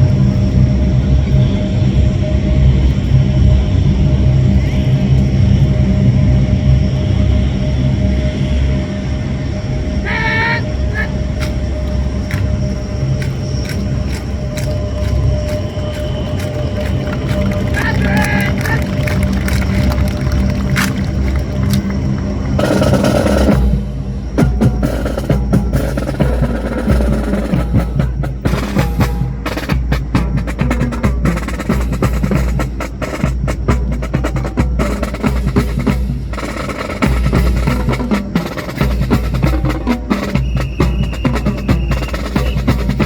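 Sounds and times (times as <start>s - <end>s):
steady low rumble: 0.0s - 40.8s
wooden rifle clacks: 17.7s - 21.9s.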